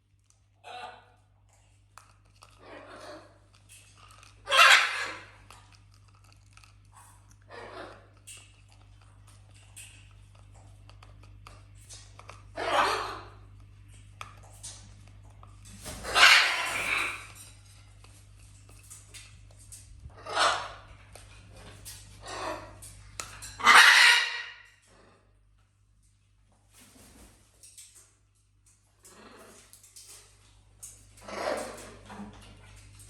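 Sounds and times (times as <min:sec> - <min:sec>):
parrots squawking: 0:04.4 - 0:05.4, 0:12.5 - 0:13.4, 0:15.8 - 0:17.4, 0:20.1 - 0:21.0, 0:22.2 - 0:22.8, 0:23.4 - 0:24.7.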